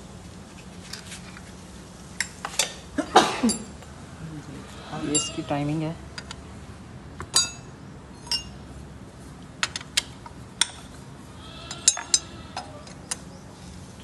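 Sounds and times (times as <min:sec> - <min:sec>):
metal tools clinking on engine: 0:02.2 - 0:03.8, 0:07.2 - 0:08.6, 0:11.6 - 0:13.3.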